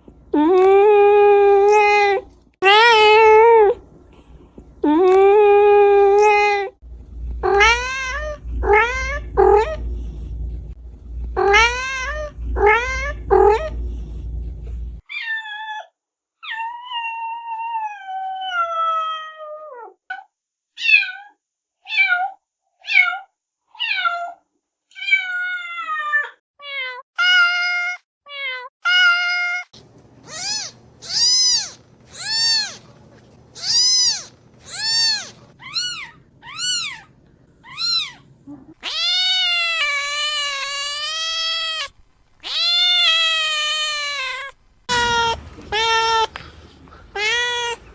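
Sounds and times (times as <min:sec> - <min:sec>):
low rumble: 0:06.8 - 0:15.0, 0:44.5 - 0:47.9
cats meowing: 0:07.4 - 0:09.8, 0:11.4 - 0:13.8, 0:30.3 - 0:33.0, 0:33.6 - 0:47.9.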